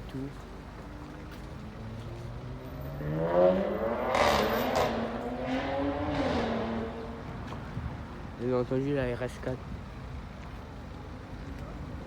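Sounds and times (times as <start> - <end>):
car engine accelerating: 2.4 - 7.3.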